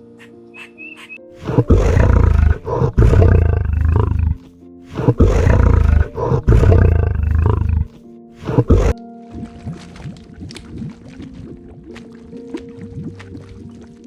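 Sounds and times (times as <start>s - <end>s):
background music: 0.0s - 14.0s
big cat roaring: 1.4s - 9.0s.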